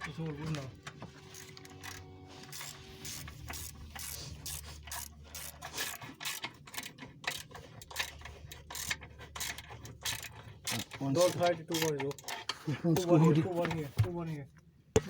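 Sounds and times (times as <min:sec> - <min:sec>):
low steady hum: 0:00.0 - 0:14.9
ratchet wrench clicking: 0:01.3 - 0:12.4.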